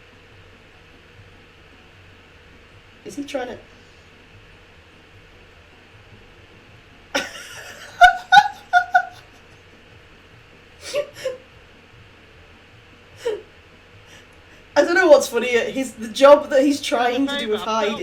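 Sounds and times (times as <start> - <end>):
person laughing: 7.2 - 9.5, 10.8 - 11.5, 13.2 - 13.5.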